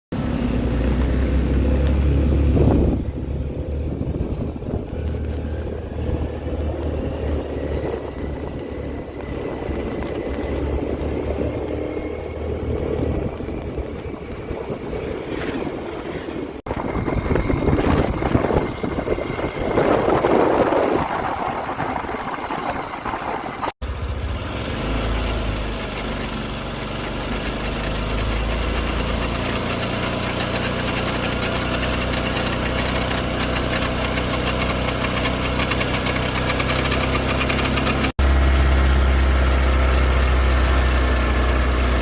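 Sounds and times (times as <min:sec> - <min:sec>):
scooter engine running: 0:00.2 - 0:42.0
faint high whine: 0:16.7 - 0:23.8.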